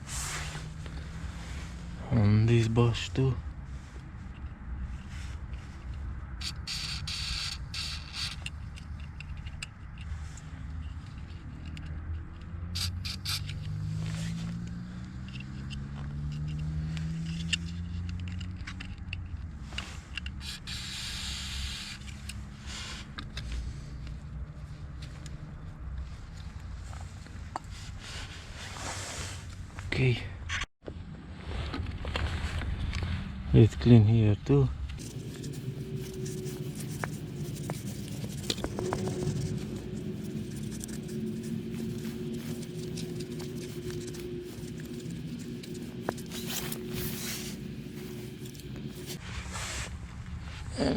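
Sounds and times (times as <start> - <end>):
small clicks and scrapes of parts: 3.9 - 30.7, 34.9 - 49.2
steady low hum: 34.7 - 50.9.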